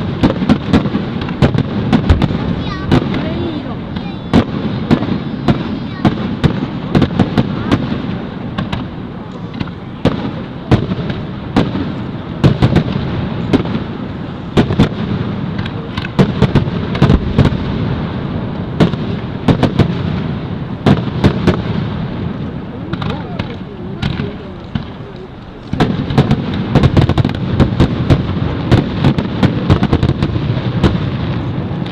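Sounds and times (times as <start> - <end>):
fireworks bursting: 0.0 - 31.9
low rumble: 17.0 - 18.8.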